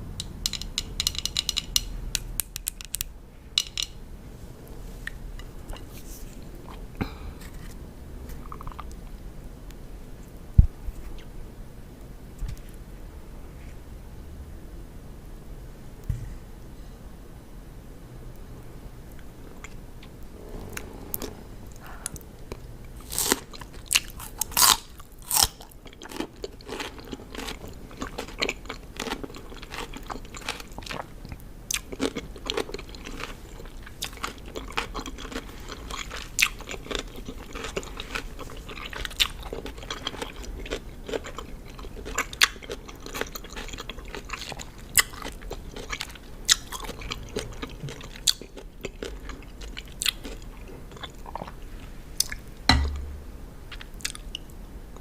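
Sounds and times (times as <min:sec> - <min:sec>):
chewing crisp cucumber: 0:19.5 - 0:51.6, 0:53.7 - 0:54.5.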